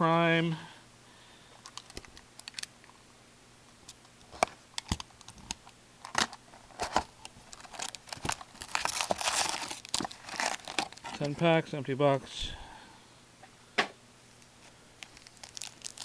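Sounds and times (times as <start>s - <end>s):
wrappers crinkling: 6.0s - 11.4s, 14.6s - 16.0s.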